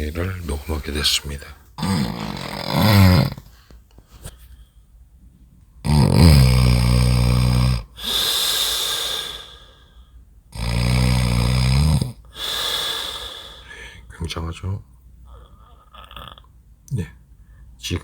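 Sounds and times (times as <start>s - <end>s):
man snoring: 1.8s - 3.4s, 5.8s - 9.7s, 10.5s - 13.8s
breathy hiss: 5.9s - 14.3s.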